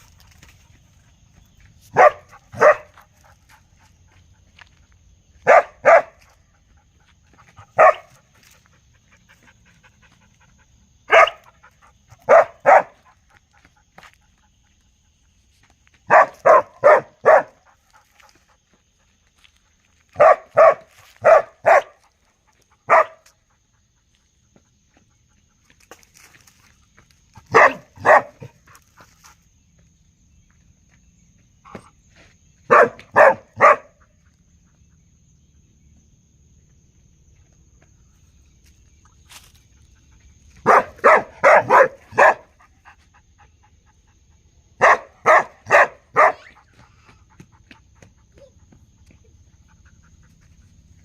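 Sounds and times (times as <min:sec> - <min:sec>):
dog barking: 0:01.9 - 0:03.0, 0:05.4 - 0:06.2, 0:07.7 - 0:08.2, 0:11.1 - 0:11.6, 0:12.2 - 0:13.1, 0:16.1 - 0:17.6, 0:20.2 - 0:22.0, 0:22.8 - 0:23.3, 0:27.5 - 0:28.6, 0:32.7 - 0:34.0, 0:40.6 - 0:42.6, 0:44.8 - 0:46.6.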